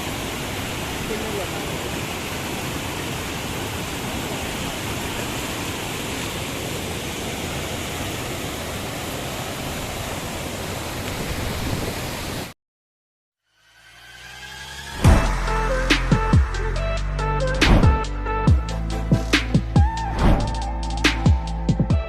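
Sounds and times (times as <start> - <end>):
waterfall rushing: 0.0 - 12.5.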